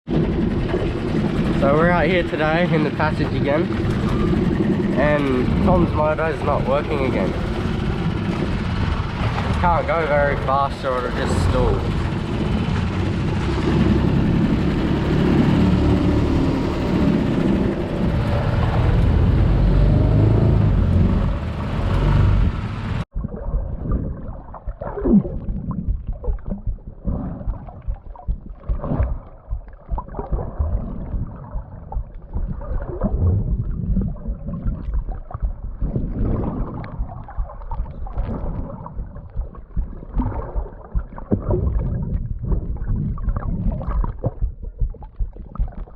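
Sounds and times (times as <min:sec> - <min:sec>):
water sloshing and gurgling: 0:00.0 - 0:45.9
outboard motor running slowly: 0:00.1 - 0:45.9
wind noise: 0:30.2 - 0:45.0.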